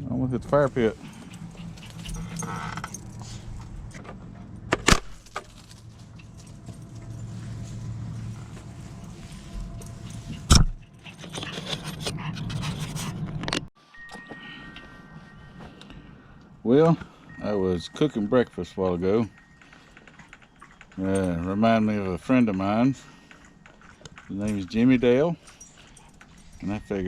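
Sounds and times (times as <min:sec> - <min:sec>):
low steady hum: 0:00.0 - 0:13.4.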